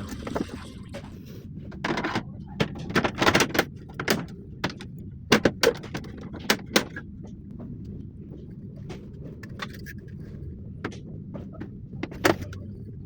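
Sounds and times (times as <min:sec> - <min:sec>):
steady low hum: 0:00.0 - 0:13.0
sharp clicks and knocks: 0:01.7 - 0:08.0.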